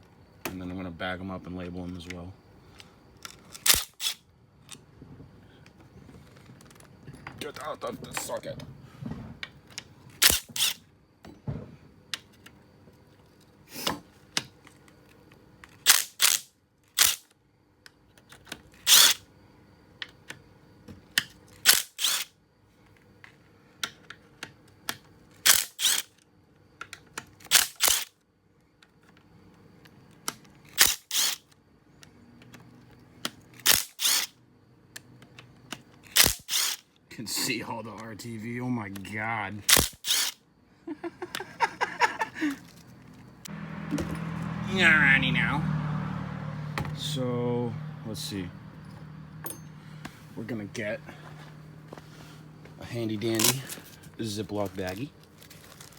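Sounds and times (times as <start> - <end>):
impact wrench hammering: 49.4 - 49.8.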